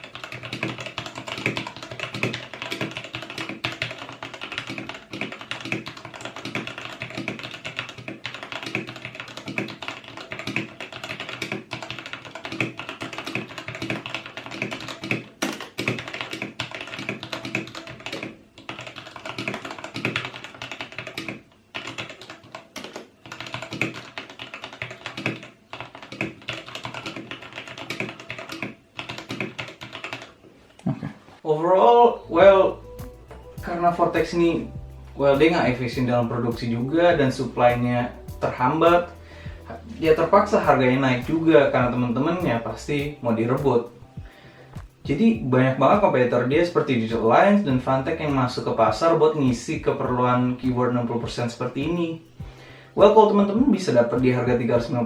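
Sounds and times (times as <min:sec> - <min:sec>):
background music: 0:31.9 - 0:55.0.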